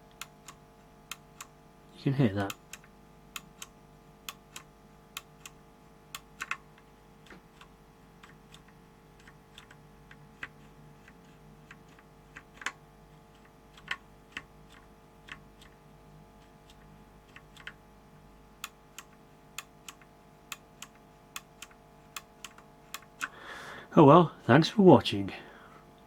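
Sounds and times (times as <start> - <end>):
keyboard switches clicking: 18.6 - 23.4.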